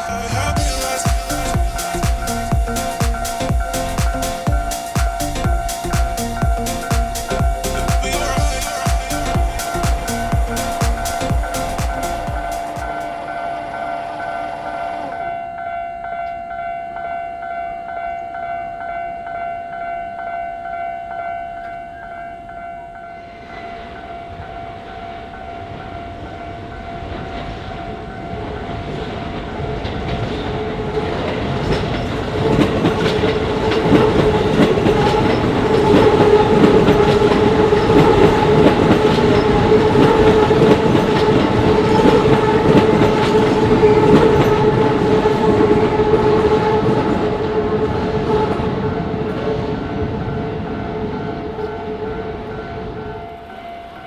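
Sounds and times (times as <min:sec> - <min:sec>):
railway crossing electronic bell: 0:00.0 - 0:54.0
train passing with wheel clatter: 0:00.0 - 0:54.0.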